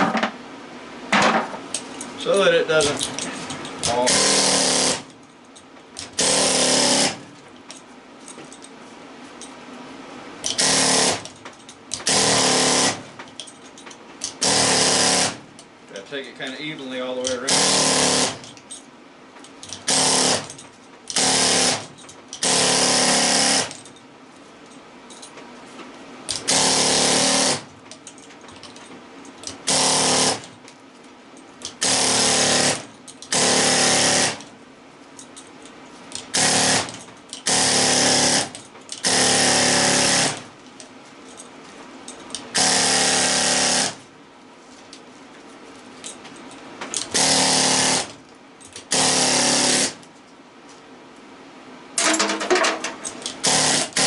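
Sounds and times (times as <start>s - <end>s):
pneumatic air chisel hammering: 3.8s - 5.1s, 6.0s - 7.2s, 10.4s - 13.0s, 14.2s - 15.5s, 17.2s - 18.5s, 19.6s - 23.8s, 26.3s - 27.7s, 29.4s - 30.5s, 31.6s - 34.5s, 36.1s - 40.5s, 42.4s - 44.0s, 46.9s - 48.2s, 48.8s - 50.0s, 52.0s - 54.0s.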